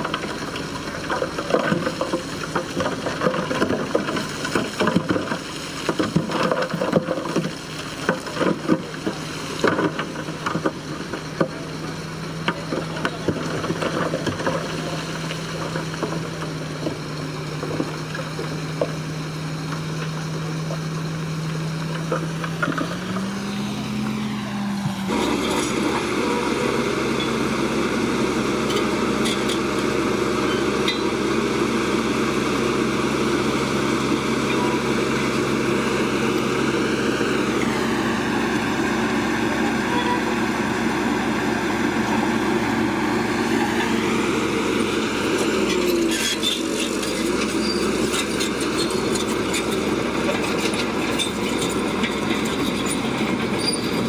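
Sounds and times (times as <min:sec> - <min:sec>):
sharp crackles and clanks: 0:00.0 - 0:27.6, 0:42.8 - 0:54.0
bulldozer diesel engine: 0:00.0 - 0:54.0.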